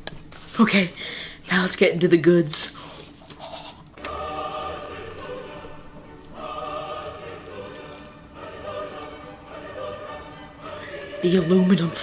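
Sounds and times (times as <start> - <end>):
choir singing held chords: 4.0 - 12.0.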